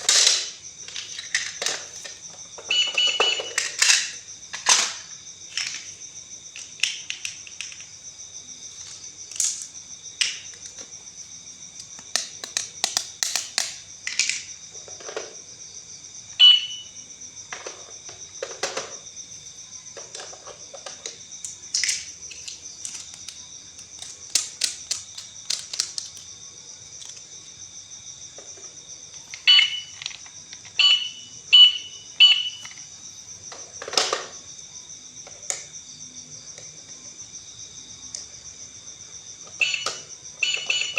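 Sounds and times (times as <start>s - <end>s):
plastic toys clicking and knocking: 0.0s - 8.0s, 8.8s - 11.0s, 11.8s - 15.4s, 17.5s - 19.1s, 19.9s - 27.3s, 28.3s - 32.9s, 33.5s - 34.5s, 35.2s - 35.7s, 39.4s - 40.9s
high insect chirring: 0.0s - 40.9s
electronic toy beeps: 2.7s - 3.6s, 16.4s - 17.0s, 29.4s - 30.0s, 30.8s - 32.7s, 39.6s - 40.9s.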